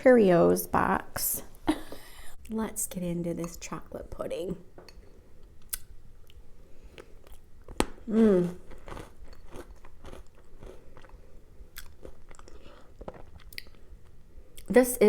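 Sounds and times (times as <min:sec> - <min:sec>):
crunchy chewing: 0:06.9 - 0:13.9
person humming mmm: 0:08.0 - 0:08.7.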